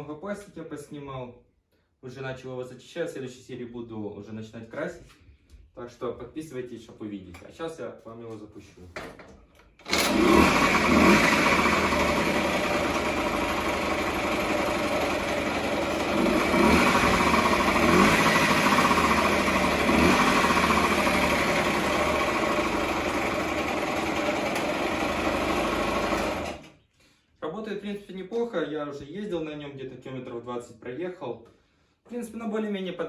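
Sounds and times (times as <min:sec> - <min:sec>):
scooter engine running: 0:09.9 - 0:26.6.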